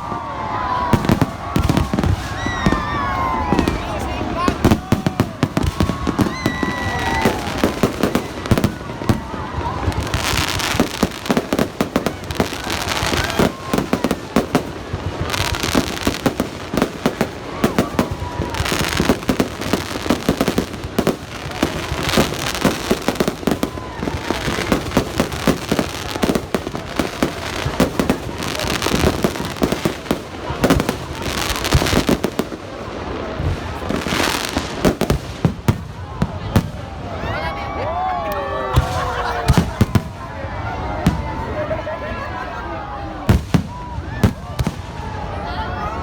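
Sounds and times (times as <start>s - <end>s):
firework bangs: 0.0s - 37.2s, 38.6s - 41.6s, 43.2s - 45.4s.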